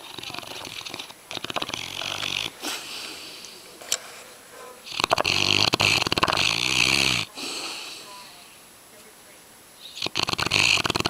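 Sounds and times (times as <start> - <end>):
dog snoring loudly: 0.0 - 2.9, 4.6 - 8.0, 9.9 - 11.0.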